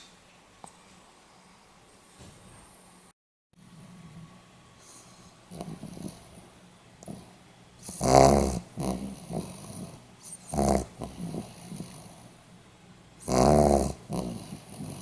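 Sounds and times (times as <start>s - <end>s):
dog breathing softly: 4.8s - 12.5s
dog snoring: 4.8s - 12.5s, 13.2s - 15.0s.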